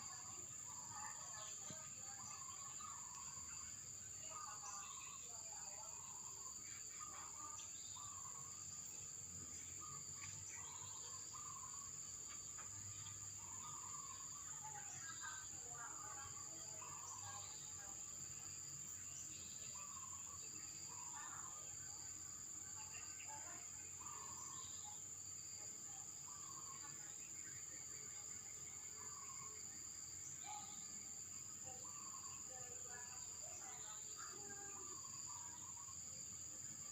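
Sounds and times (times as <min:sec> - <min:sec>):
insects stridulating: 0:00.0 - 0:36.9.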